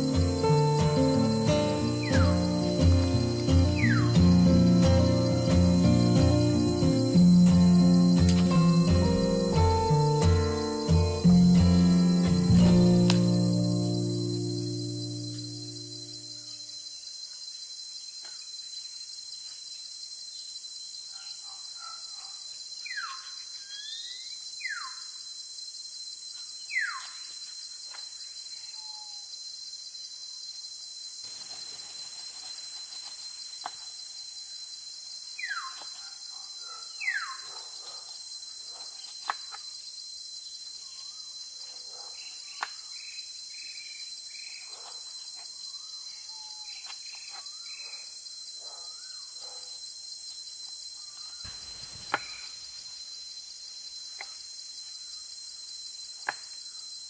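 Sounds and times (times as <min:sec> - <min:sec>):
bird whistling: 0:00.0 - 0:05.1
bird chirps: 0:00.0 - 0:16.5
insect chorus: 0:00.0 - 0:57.0.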